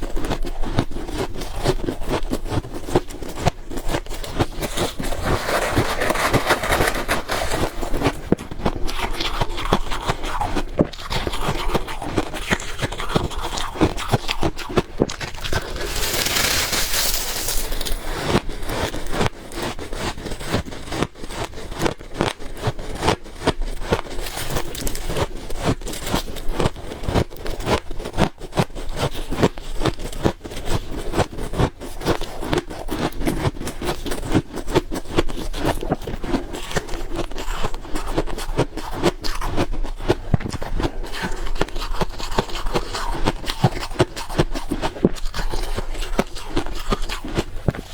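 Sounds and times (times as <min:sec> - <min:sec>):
ice being chewed: 0:00.0 - 0:47.9
hissing scrape: 0:15.5 - 0:18.2.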